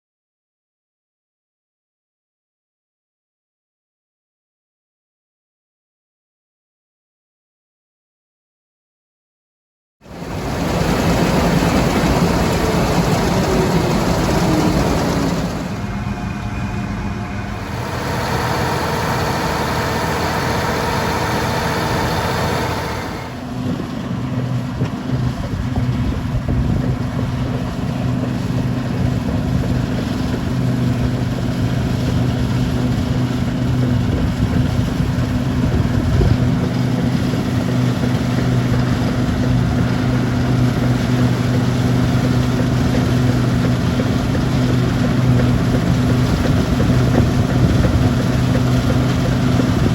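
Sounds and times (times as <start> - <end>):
diesel engines running: 10.1 - 49.9.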